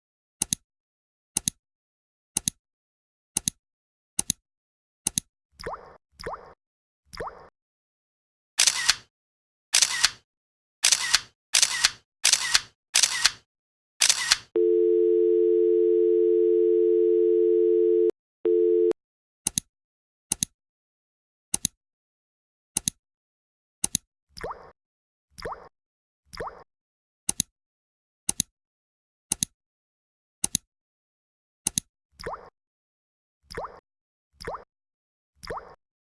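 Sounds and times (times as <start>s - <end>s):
short clicks: 8.6s - 9.1s, 9.8s - 10.2s, 14.0s - 14.5s
telephone dial tone: 14.6s - 19.0s.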